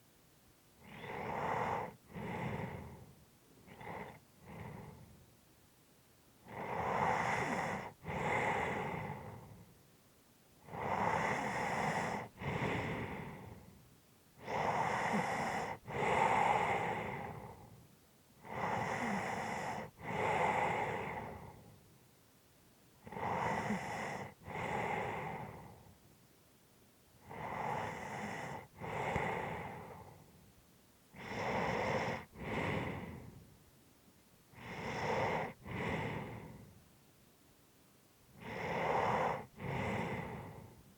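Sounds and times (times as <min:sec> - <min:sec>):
person breathing heavily: 0:00.8 - 0:03.1, 0:10.7 - 0:13.8, 0:27.3 - 0:30.4, 0:31.2 - 0:33.5, 0:34.6 - 0:36.8, 0:38.4 - 0:40.8.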